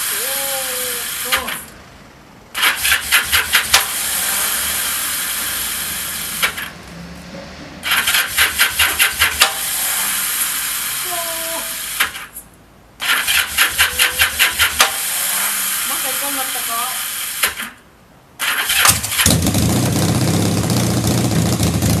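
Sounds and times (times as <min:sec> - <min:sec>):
electric starter cranking: 0:00.0 - 0:01.8, 0:02.5 - 0:06.8, 0:07.8 - 0:12.4, 0:13.0 - 0:17.8, 0:18.4 - 0:21.9
motorcycle engine running: 0:02.5 - 0:06.9, 0:18.5 - 0:22.0.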